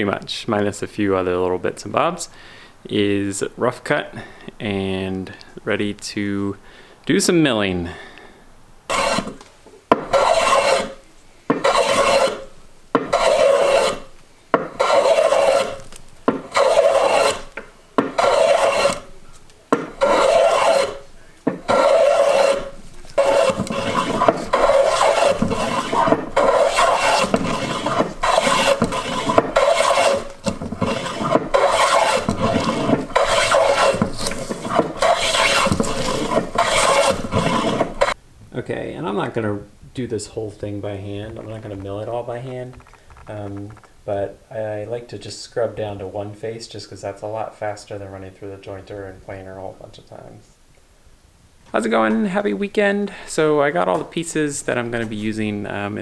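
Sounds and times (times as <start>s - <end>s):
hand plane scrubbing wood: 8.9s - 38.2s.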